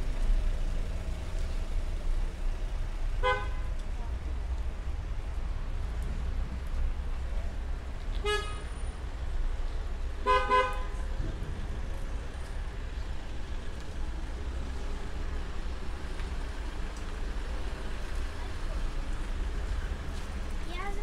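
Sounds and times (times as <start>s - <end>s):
street background noise: 0.0s - 21.0s
car horn tooting: 3.2s - 3.7s, 8.2s - 8.6s, 10.2s - 11.0s.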